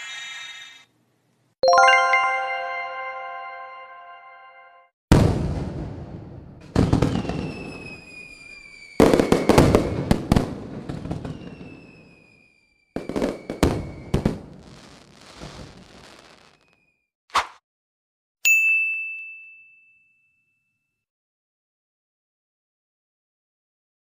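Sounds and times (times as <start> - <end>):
fireworks bangs: 5.1 - 16.9
fireworks crackling: 6.6 - 16.8
high whistle sliding down: 7.3 - 9.7.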